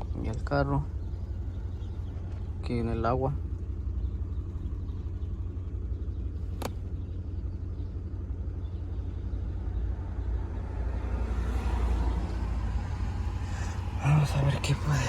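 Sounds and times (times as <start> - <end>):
car engine idling and misfiring: 0.0 - 15.0
sharp click: 6.5 - 6.8.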